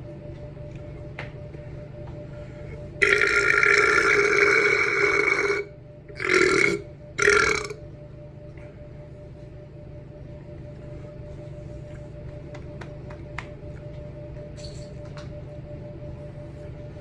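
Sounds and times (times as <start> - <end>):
person burping: 3.0 - 7.8.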